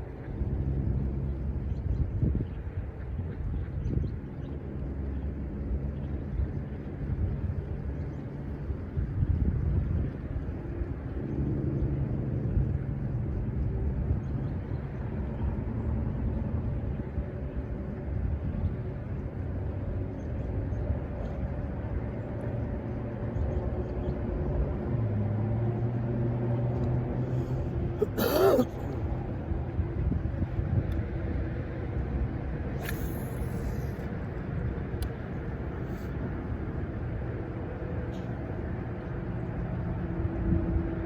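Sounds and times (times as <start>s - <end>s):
low engine drone: 10.1s - 41.0s.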